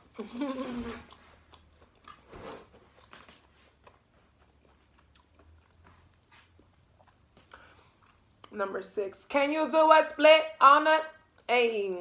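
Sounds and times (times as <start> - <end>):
person chewing food: 0.3 - 8.6.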